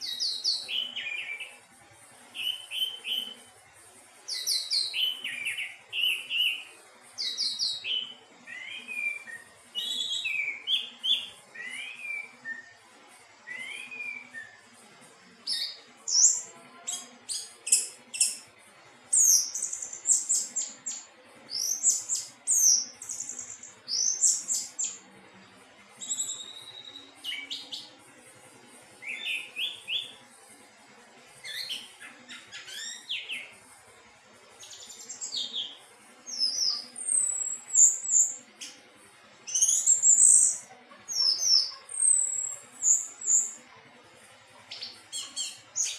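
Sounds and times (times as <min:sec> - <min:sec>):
thrush singing whistled song: 0:00.0 - 0:01.6, 0:02.3 - 0:03.5, 0:04.3 - 0:12.8, 0:13.4 - 0:14.7, 0:15.4 - 0:18.5, 0:19.1 - 0:25.0, 0:26.0 - 0:28.0, 0:29.0 - 0:30.2, 0:31.4 - 0:33.6, 0:34.6 - 0:38.8, 0:39.4 - 0:43.6, 0:44.7 - 0:45.9.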